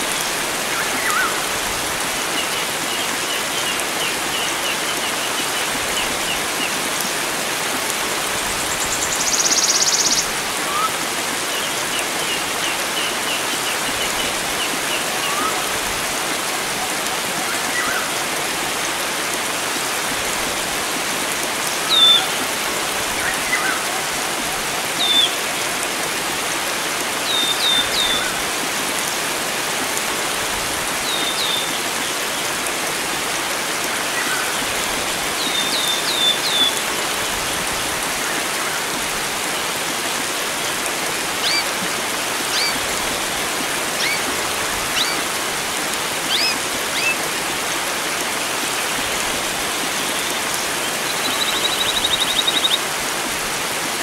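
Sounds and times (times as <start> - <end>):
flowing water rushing: 0.0 - 54.0
wild birds chirping: 43.9 - 45.4.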